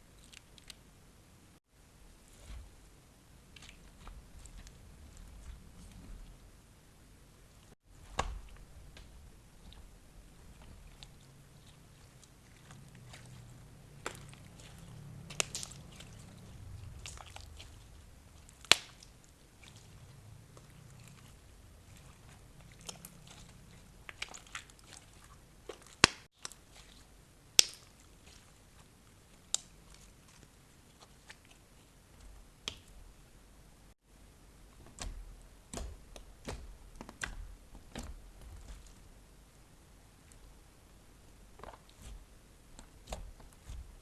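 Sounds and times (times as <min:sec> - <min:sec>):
slime squishing: 0:00.1 - 0:00.8, 0:01.9 - 0:06.7, 0:07.3 - 0:33.4, 0:34.6 - 0:39.3, 0:40.1 - 0:44.0
slime clicking and popping: 0:14.0 - 0:16.2, 0:18.4 - 0:19.1, 0:25.7 - 0:26.6, 0:27.5 - 0:27.9.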